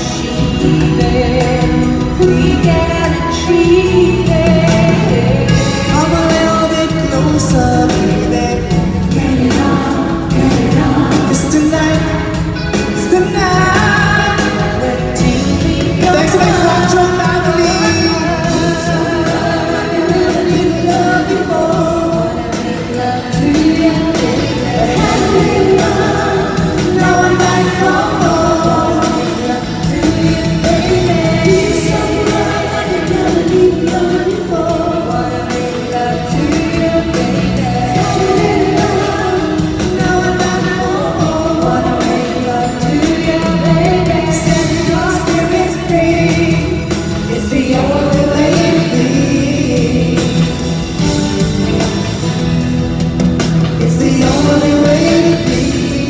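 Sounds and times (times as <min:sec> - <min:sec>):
musical accompaniment: 0:00.0 - 0:56.0
voices singing a melody: 0:00.0 - 0:56.0.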